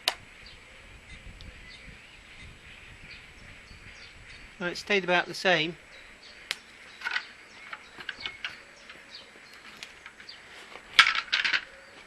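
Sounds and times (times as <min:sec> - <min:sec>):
faint bird chirps: 0:00.3 - 0:10.6, 0:11.6 - 0:12.0.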